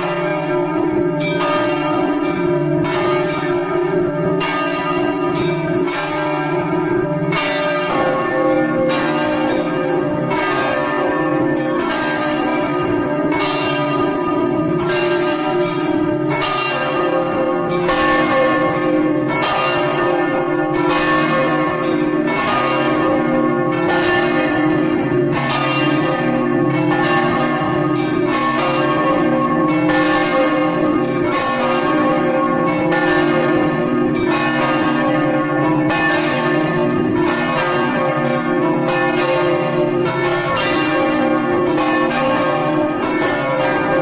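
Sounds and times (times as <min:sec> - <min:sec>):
church bells pealing: 0:00.0 - 0:44.0.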